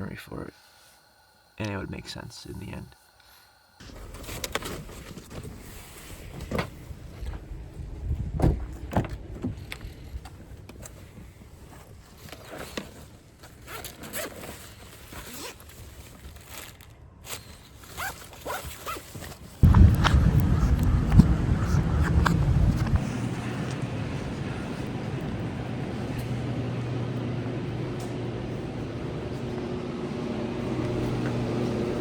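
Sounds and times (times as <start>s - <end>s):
camping gear being handled: 8.8s - 20.1s
zipper: 12.2s - 23.2s.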